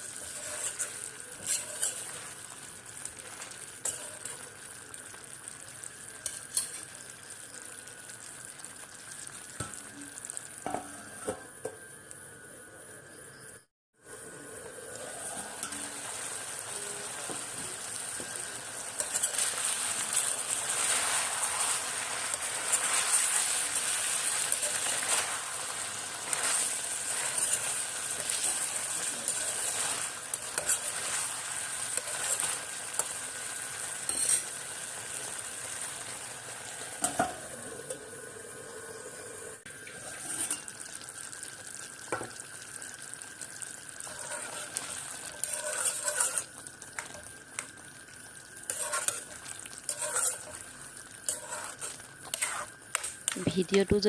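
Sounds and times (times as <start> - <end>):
spatula scraping a pan: 0.0 - 2.6, 19.0 - 33.2, 34.0 - 35.2, 40.1 - 40.7, 44.0 - 47.2, 48.6 - 53.4
meat sizzling in a pan: 0.0 - 54.0.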